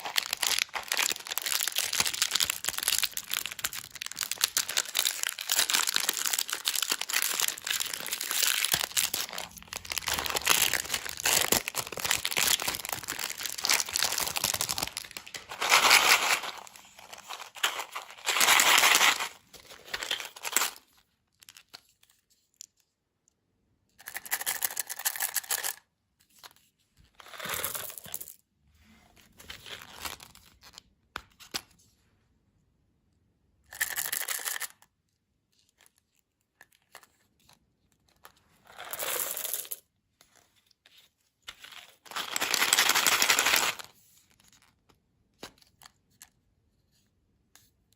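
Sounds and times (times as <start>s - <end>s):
packaging crackling: 0.0s - 20.8s
packaging tearing: 0.0s - 20.8s
packaging rustling: 0.0s - 20.9s, 41.9s - 43.9s.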